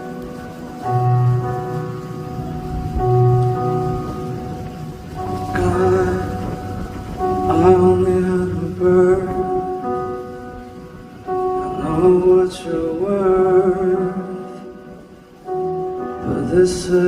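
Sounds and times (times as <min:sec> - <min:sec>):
slow gentle live music: 0:00.0 - 0:17.0.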